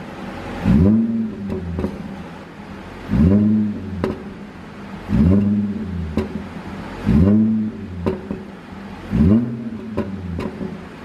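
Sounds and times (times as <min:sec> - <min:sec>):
car engine revving: 0:00.0 - 0:11.0
exhaust pop: 0:00.6 - 0:02.2, 0:03.1 - 0:04.5, 0:05.1 - 0:10.9.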